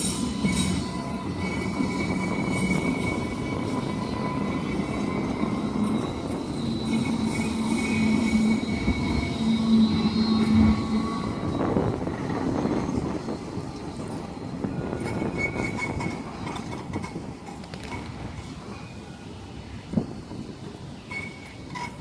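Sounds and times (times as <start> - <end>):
thin high tones: 0.0 - 11.9
tram rumbling with hum: 0.0 - 22.0.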